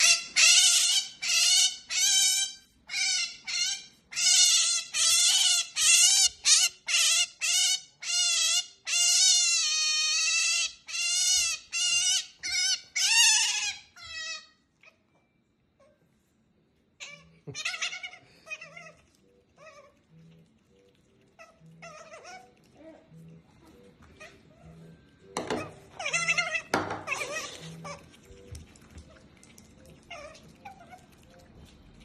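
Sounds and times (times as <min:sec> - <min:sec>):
otter squeaky calls: 0:00.0 - 0:15.0, 0:21.3 - 0:22.6, 0:23.8 - 0:28.5.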